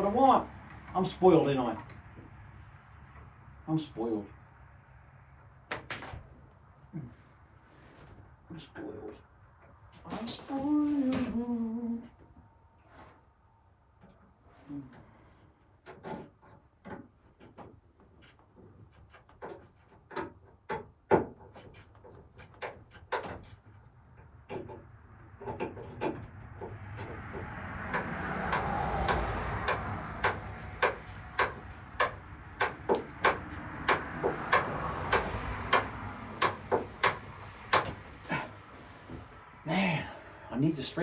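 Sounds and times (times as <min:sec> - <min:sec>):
clicks and knocks on metal: 0:15.8 - 0:38.2.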